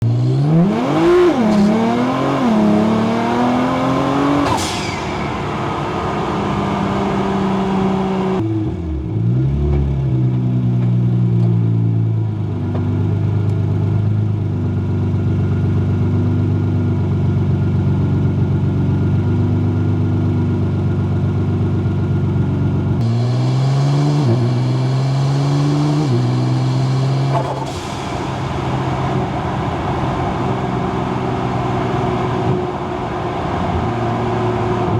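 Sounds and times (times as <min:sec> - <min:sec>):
car engine accelerating: 0:00.0 - 0:34.9
high rising turbo whistle: 0:01.3 - 0:08.4.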